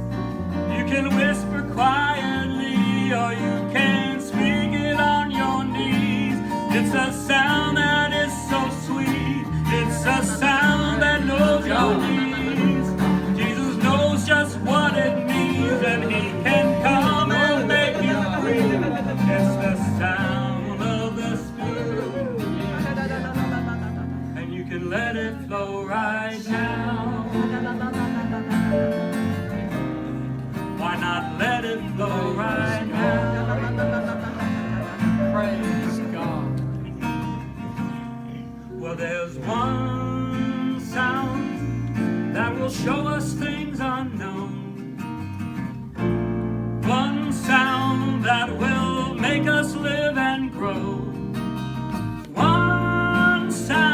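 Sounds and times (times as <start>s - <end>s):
strummed acoustic guitar: 0.0s - 53.9s
person singing: 0.7s - 23.7s, 24.3s - 29.1s, 30.8s - 37.0s, 52.3s - 53.9s.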